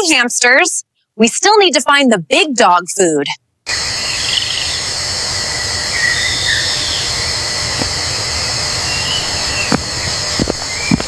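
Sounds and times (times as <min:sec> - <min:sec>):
steady hissing ambience: 0:00.0 - 0:11.0
faint high chirps: 0:05.8 - 0:07.2.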